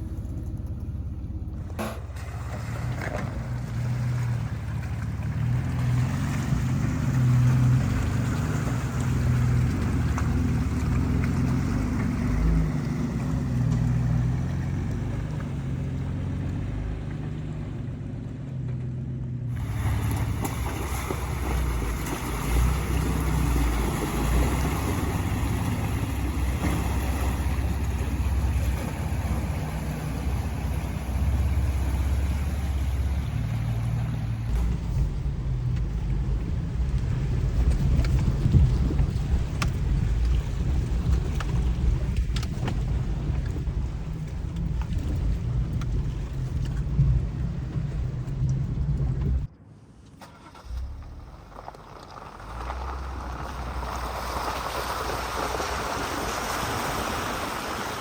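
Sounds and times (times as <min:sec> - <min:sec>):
off-road vehicle engine rumble: 0:00.0 - 0:58.0
wind noise: 0:34.4 - 0:49.5.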